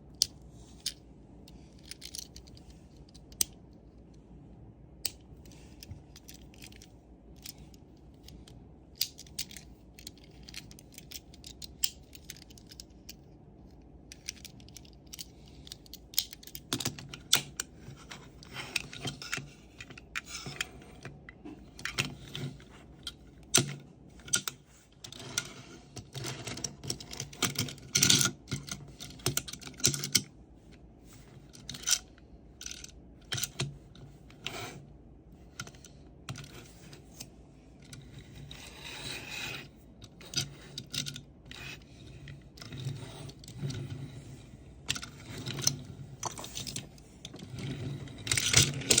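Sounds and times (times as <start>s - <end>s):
plastic and metal parts clicking: 0.1s - 3.6s, 5.0s - 13.2s, 14.1s - 21.1s, 48.2s - 49.0s.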